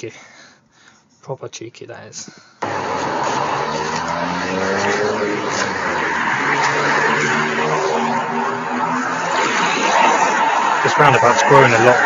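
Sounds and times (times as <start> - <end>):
cars passing by: 2.6 - 12.0
tyre and road noise: 2.6 - 12.0.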